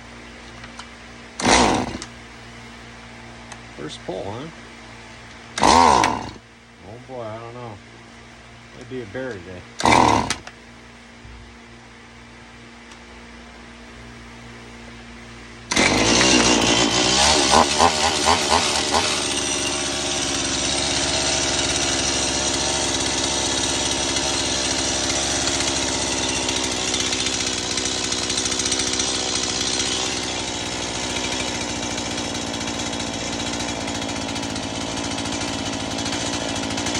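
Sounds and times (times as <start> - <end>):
chainsaw engine running: 0.0 - 2.2, 3.5 - 4.6, 5.3 - 7.8, 8.8 - 10.6, 15.6 - 36.9
chainsaw revving: 0.6 - 2.2, 5.5 - 6.4, 8.8 - 10.6, 15.7 - 36.9.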